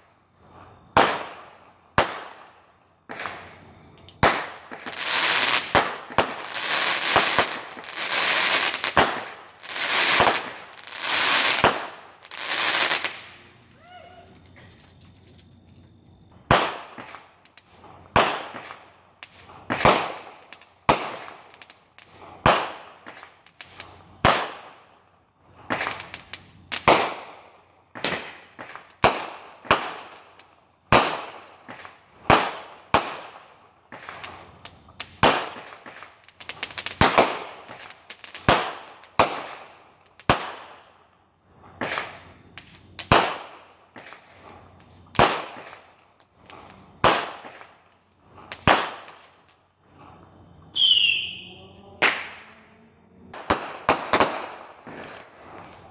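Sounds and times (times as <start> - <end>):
fireworks bangs with echo: 0.9 - 13.4, 16.4 - 24.8, 25.5 - 40.8, 41.6 - 49.3, 50.0 - 55.9.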